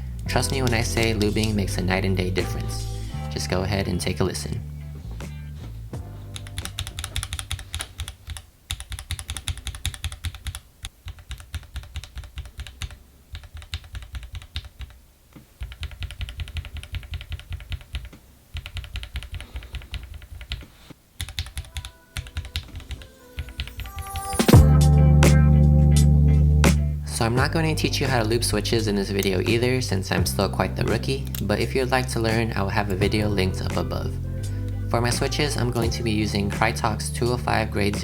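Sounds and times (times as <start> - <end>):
fast typing on mechanical keyboard: 6.4 - 15.0, 15.6 - 23.8.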